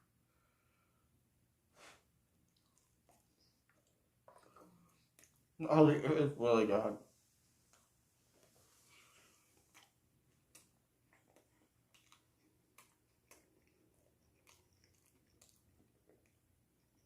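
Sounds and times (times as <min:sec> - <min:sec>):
person chewing food: 0:02.4 - 0:05.5, 0:08.4 - 0:17.0.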